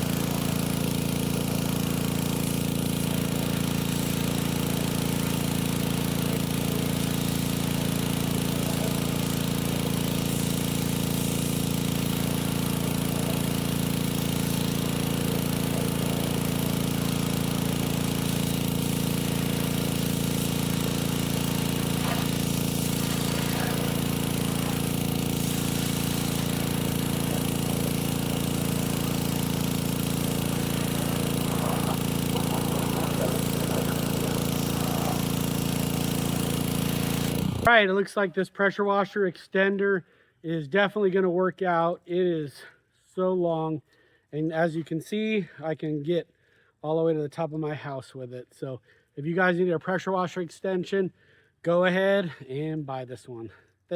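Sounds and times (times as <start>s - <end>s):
small gasoline engine running: 0.0s - 37.7s
water spray hissing: 0.0s - 37.7s.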